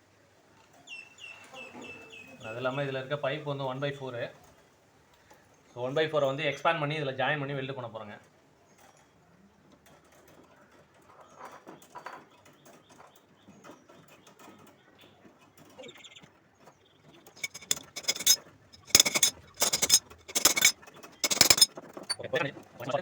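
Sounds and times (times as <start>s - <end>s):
metal tool clicks and knocks: 17.4s - 22.2s
metallic scraping: 17.4s - 22.3s.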